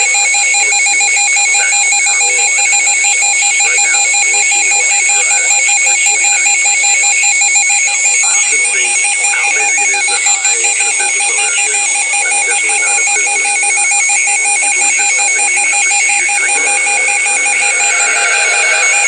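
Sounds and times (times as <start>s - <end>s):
two-tone electronic alarm: 0.0s - 19.0s.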